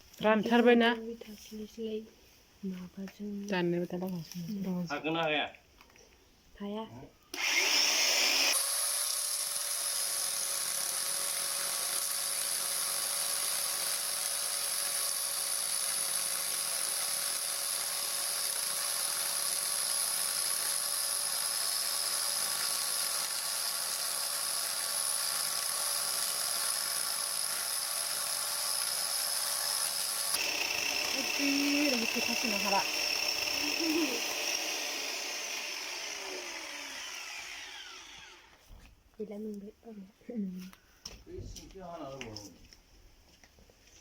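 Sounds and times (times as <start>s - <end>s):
electric chainsaw motor whine: 7.3s - 38.6s.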